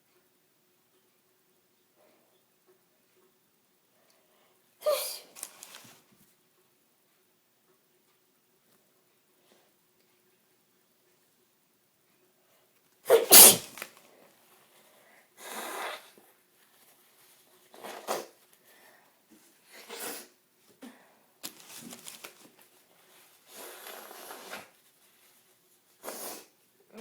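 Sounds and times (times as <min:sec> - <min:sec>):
woman sneezing: 0:04.8 - 0:05.3, 0:13.1 - 0:13.7.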